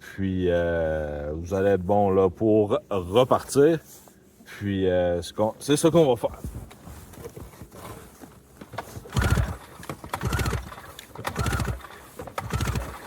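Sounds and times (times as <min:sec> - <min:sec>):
snowmobile engine cranked by pull cord: 0:08.6 - 0:13.0.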